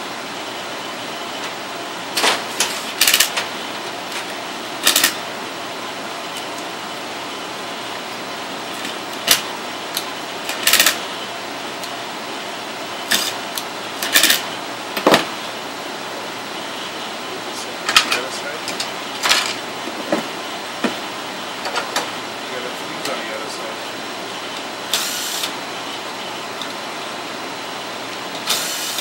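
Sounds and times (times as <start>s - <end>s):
hard parts clicking and clattering: 2.2s - 3.5s, 4.1s - 5.2s, 8.8s - 11.0s, 14.0s - 14.4s.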